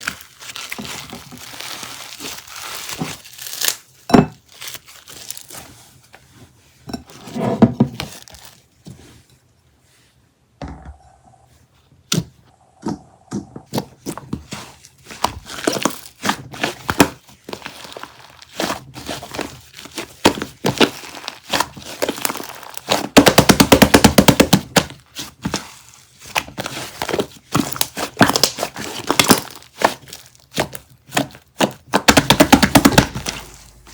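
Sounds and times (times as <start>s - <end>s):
crinkling and tearing: 0.0s - 6.0s, 8.0s - 8.8s, 13.7s - 23.2s, 25.0s - 33.9s.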